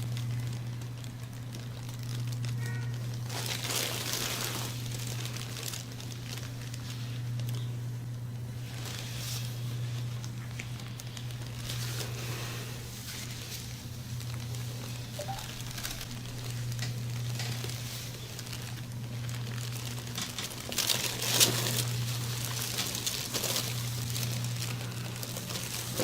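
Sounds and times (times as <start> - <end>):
sharp crackle: 0.0 - 26.0
steady low hum: 0.0 - 26.0
rustling on treatment table: 8.5 - 26.0.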